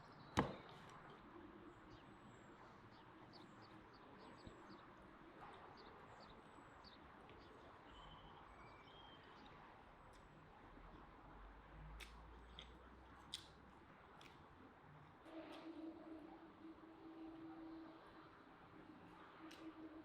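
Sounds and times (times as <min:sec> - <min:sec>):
small birds chirping: 0:01.7 - 0:10.4
whistled bird notes: 0:07.9 - 0:09.4.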